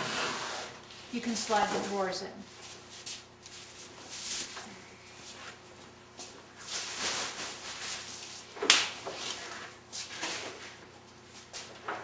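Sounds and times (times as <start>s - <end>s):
wooden drawer sliding scrape: 0.0s - 0.7s.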